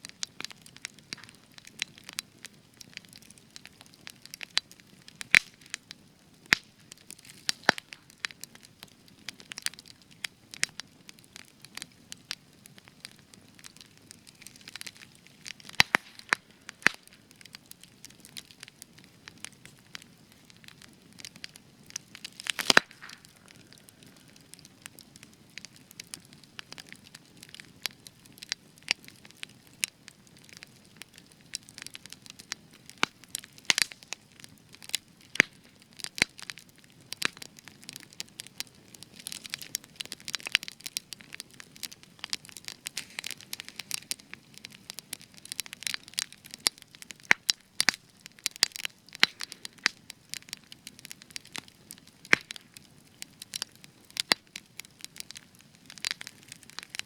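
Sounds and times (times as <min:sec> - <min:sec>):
campfire crackling and popping: 0:00.0 - 0:57.0
faint hiss of flame: 0:42.2 - 0:45.2.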